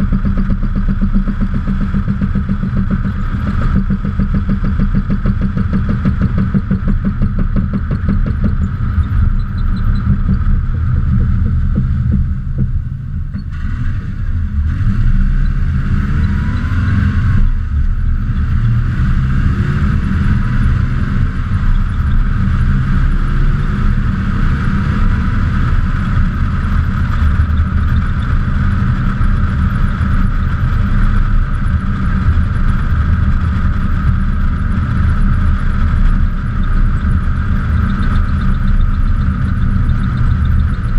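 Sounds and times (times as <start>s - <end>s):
car engine noise: 0.0s - 40.9s
road and wind rumble: 0.0s - 40.9s.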